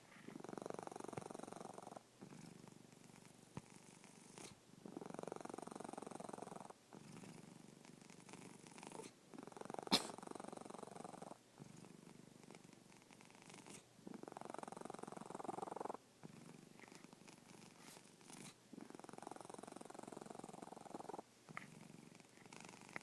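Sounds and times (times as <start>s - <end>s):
cat snoring: 0.0s - 23.0s.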